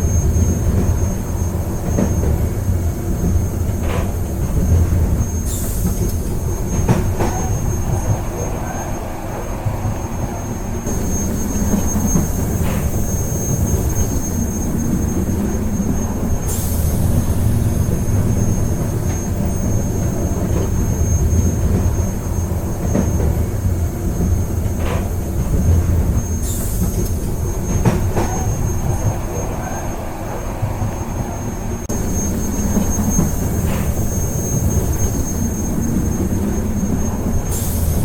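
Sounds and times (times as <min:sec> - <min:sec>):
train rumble inside carriage: 0:00.0 - 0:38.0.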